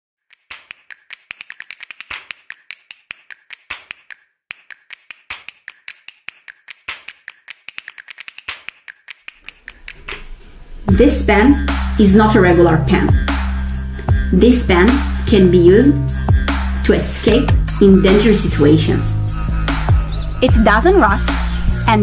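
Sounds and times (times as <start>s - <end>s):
rapid sharp clicks: 0.3s - 10.3s.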